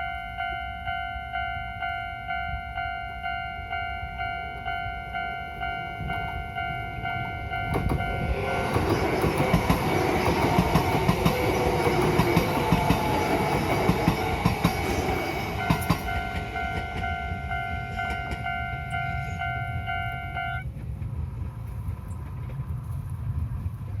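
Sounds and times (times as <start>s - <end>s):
level-crossing alarm ding: 0.0s - 9.0s, 13.7s - 20.6s
train running noise: 0.0s - 24.0s
train wheel clicks: 5.6s - 22.7s.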